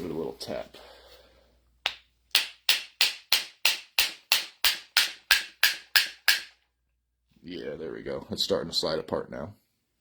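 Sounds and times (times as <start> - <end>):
hammer tapping on metal: 1.9 - 6.6.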